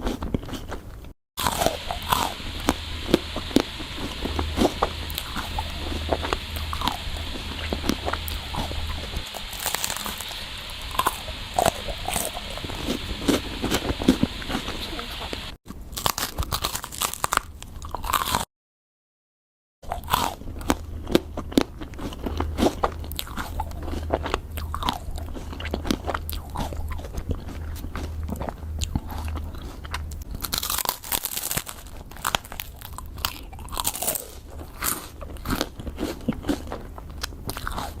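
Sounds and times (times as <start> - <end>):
crunching bites: 0.0 - 14.7, 15.4 - 18.4, 19.9 - 38.0
wet chewing: 0.0 - 18.4, 19.9 - 38.0
low steady hum: 1.4 - 15.6, 20.7 - 30.6.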